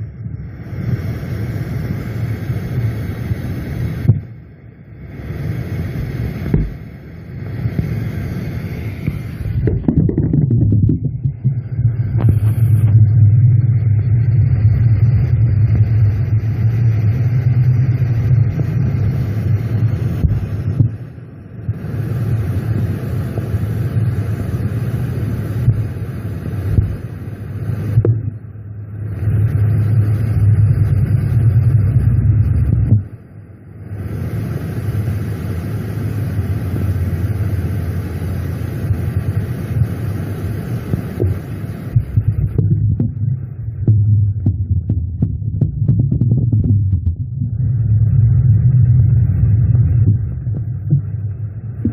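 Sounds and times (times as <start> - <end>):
low droning rumble: 0.0 - 51.9.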